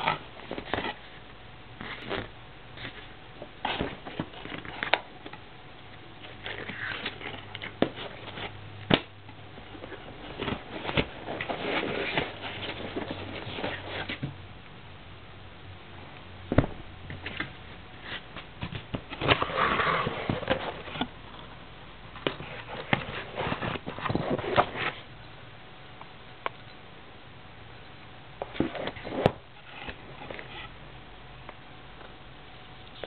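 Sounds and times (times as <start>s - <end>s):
packaging rustling: 6.2s - 14.3s.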